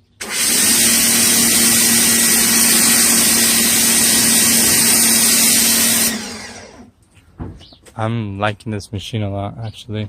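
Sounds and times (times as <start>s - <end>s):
pressure washer motor hum: 0.0s - 6.9s.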